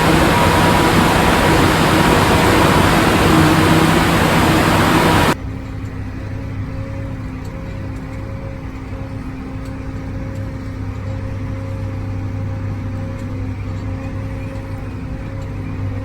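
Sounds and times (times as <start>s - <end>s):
harvesting machinery engine drone: 0.0s - 5.4s.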